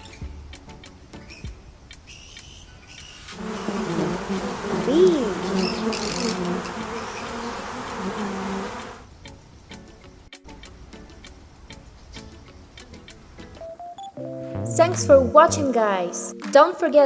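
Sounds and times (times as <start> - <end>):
bee buzzing: 3.3 - 9.1.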